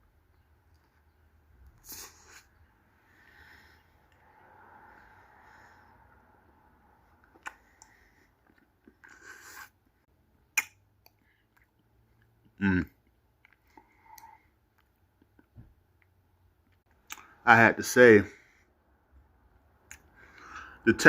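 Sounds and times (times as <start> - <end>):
man chewing with mouth clicks: 7.2 - 17.3.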